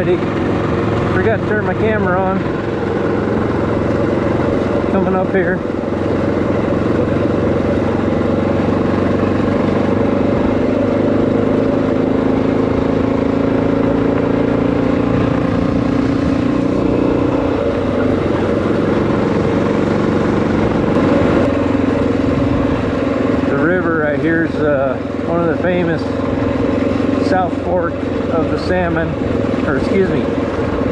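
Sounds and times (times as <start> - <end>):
motorcycle engine running: 0.0 - 30.9.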